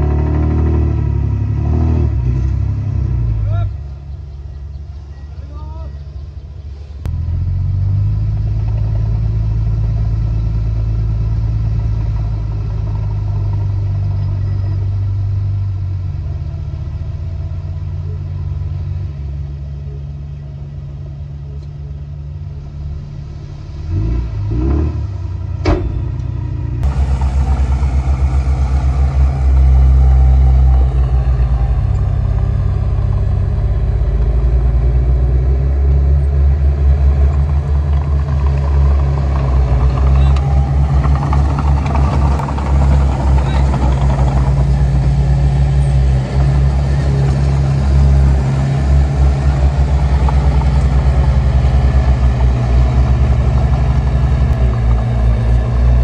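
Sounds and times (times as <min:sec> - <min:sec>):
heavy diesel machinery rumbling: 0:00.0 - 0:56.0
metallic clanks: 0:25.6 - 0:28.9.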